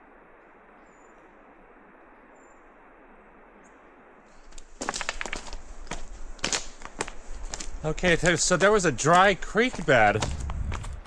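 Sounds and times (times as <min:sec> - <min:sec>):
faint bird chirps: 0:00.0 - 0:04.0
crunching and knocking: 0:04.5 - 0:11.0.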